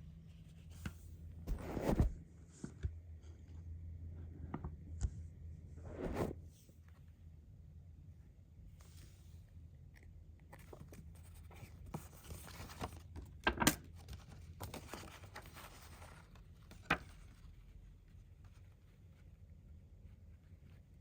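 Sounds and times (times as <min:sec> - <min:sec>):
low steady hum: 0:00.0 - 0:21.0
plastic and paper rustling: 0:10.6 - 0:19.2.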